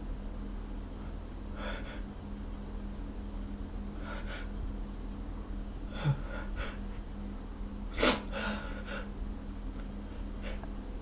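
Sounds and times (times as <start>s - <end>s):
man sniffing: 8.0s - 9.1s.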